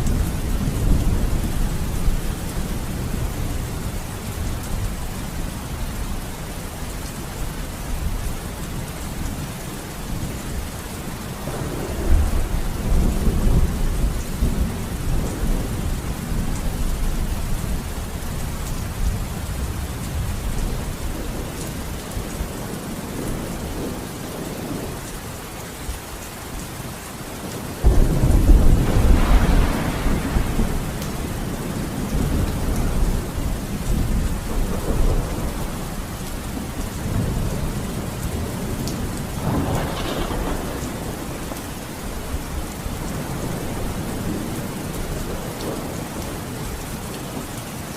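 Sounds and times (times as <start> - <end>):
steady rain: 0.0 - 47.9
thunder rumbling: 11.4 - 24.9, 27.8 - 46.6
thunderclap: 27.8 - 33.2, 39.4 - 41.6.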